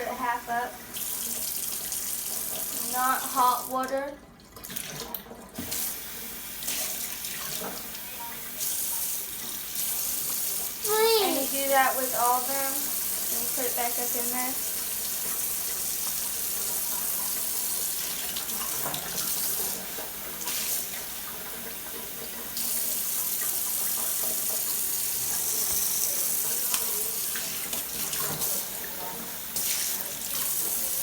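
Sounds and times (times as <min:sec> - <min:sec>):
tap running into a sink: 0:04.6 - 0:06.0, 0:15.2 - 0:31.0.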